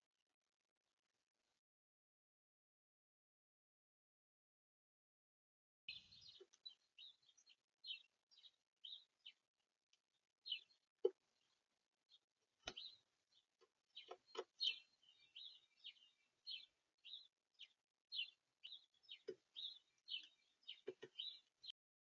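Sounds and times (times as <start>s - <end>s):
songbirds chirping: 5.9s - 21.8s
sharp knocks and taps: 13.6s - 14.6s, 20.8s - 21.2s.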